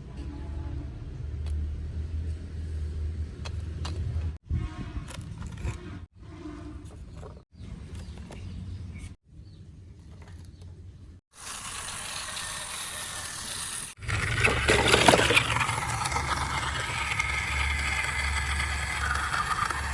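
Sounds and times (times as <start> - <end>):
plastic rattling and scraping: 5.0 - 6.0, 14.0 - 19.9
toy electric motor whirring: 11.3 - 19.9.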